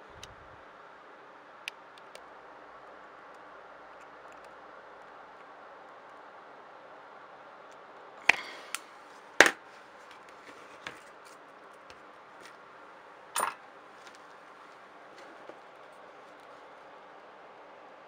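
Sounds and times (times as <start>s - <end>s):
metal tools clicking and tapping: 13.4s - 13.6s.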